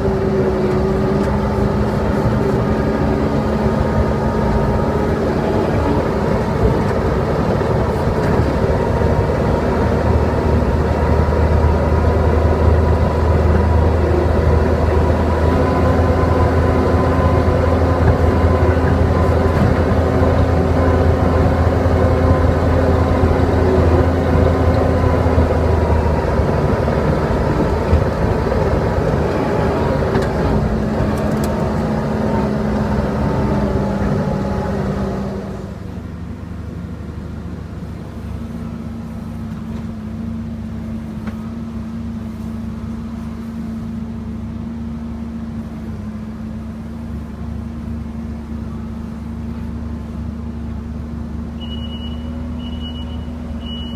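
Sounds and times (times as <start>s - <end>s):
large engine humming: 0.0s - 53.9s.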